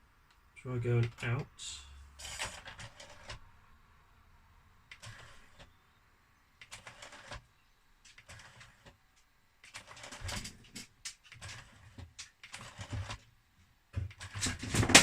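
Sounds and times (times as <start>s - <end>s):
irregular clicks and rattles: 2.2s - 3.4s, 4.9s - 5.8s, 6.6s - 15.0s.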